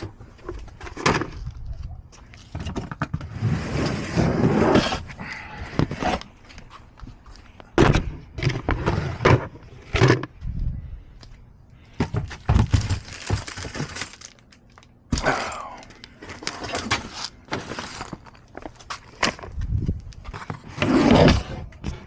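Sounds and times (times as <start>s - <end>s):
handling knocks and thumps: 11.9s - 14.4s.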